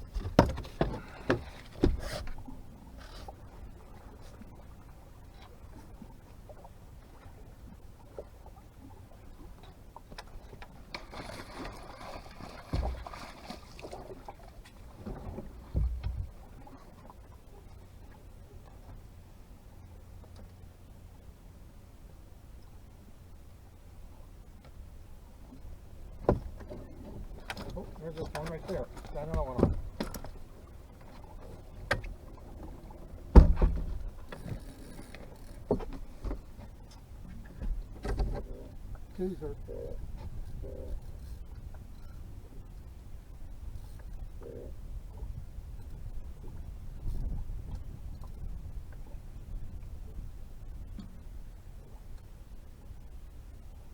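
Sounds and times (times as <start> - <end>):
heavy thump against hull: 0.0 - 2.4, 12.4 - 13.6, 15.0 - 16.4, 26.2 - 30.4, 31.0 - 36.7, 37.3 - 38.6
clicks and knocks in boat: 0.0 - 3.4, 9.6 - 17.2, 26.1 - 40.7
heavy thump: 33.3 - 34.1.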